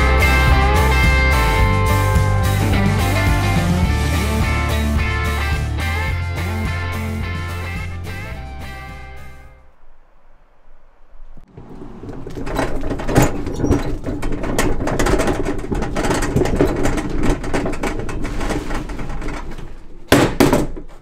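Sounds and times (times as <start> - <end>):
demolition knocks and clatter: 11.5 - 21.0.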